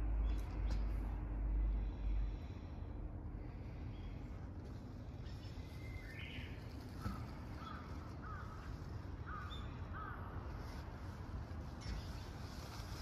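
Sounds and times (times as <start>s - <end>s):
low outdoor rumble: 0.0s - 13.0s
crow cawing: 7.0s - 10.3s.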